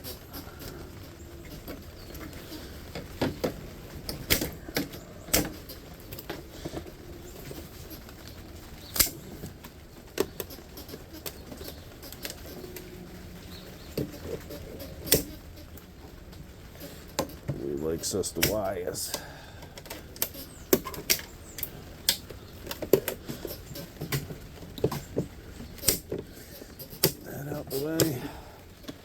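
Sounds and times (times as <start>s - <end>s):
light rustling: 0.0s - 29.0s
clicks and knocks of tools: 2.9s - 6.9s.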